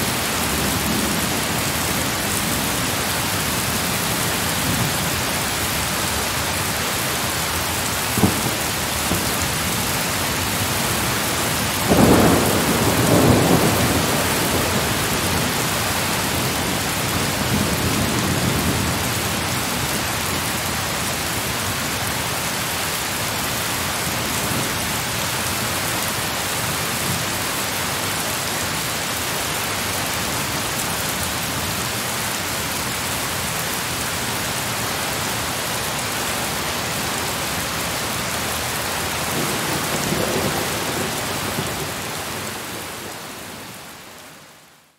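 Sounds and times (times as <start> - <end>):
heavy rain pouring: 0.0 - 44.9
thunder cracking and rumbling: 8.0 - 19.9.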